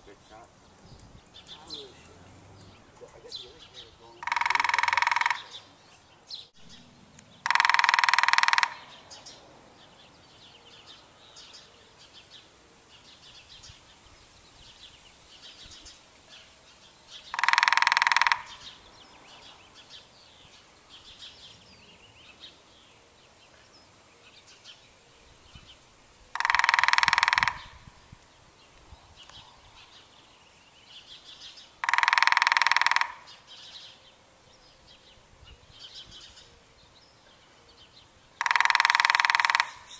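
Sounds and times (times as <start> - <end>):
woodpecker drumming: 0.0 - 9.4, 16.8 - 18.9, 26.3 - 28.7, 31.0 - 34.0, 38.2 - 39.9
small birds chirping: 0.0 - 39.9.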